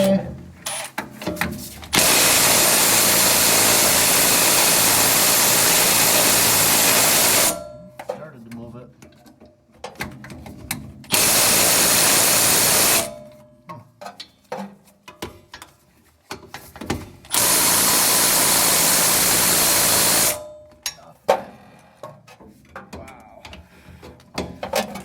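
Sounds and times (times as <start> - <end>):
impact wrench hammering: 2.0 - 8.2, 11.1 - 13.4, 17.3 - 21.4.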